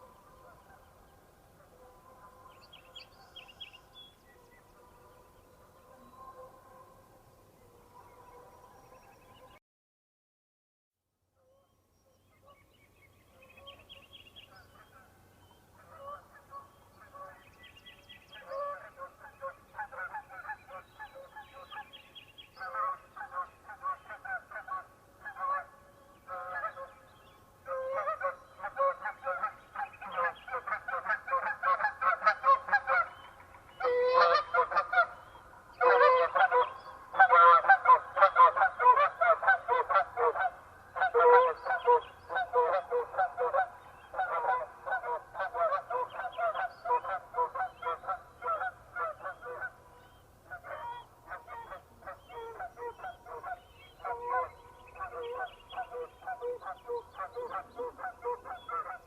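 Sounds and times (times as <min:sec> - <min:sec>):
geese honking: 0:33.8 - 0:59.0.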